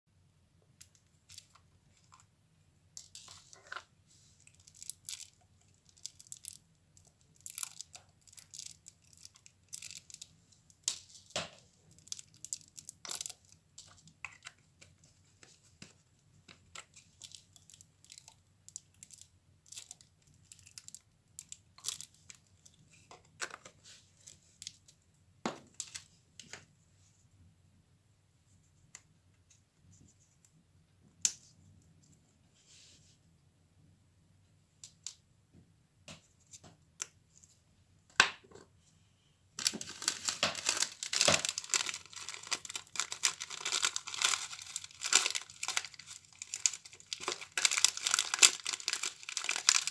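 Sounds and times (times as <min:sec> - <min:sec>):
slime crackling and popping: 0:04.5 - 0:11.2, 0:39.6 - 0:49.9.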